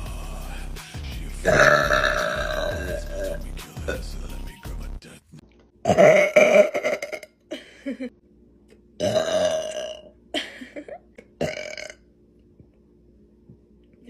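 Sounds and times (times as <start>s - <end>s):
woman burping loudly: 1.5s - 3.3s, 5.8s - 7.5s, 9.0s - 10.4s, 11.4s - 12.1s.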